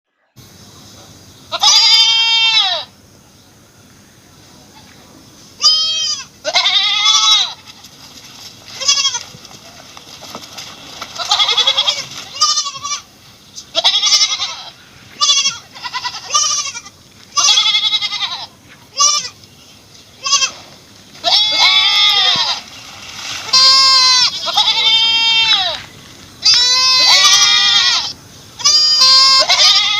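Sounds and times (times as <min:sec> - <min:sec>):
goat bleating: 0:01.5 - 0:02.9, 0:05.6 - 0:07.8, 0:08.7 - 0:09.4, 0:11.2 - 0:13.1, 0:13.7 - 0:19.4, 0:20.2 - 0:22.7, 0:23.4 - 0:29.9.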